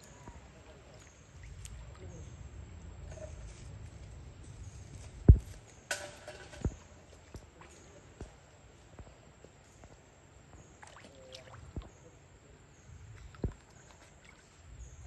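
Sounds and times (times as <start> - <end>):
water splashing: 10.8 - 12.0.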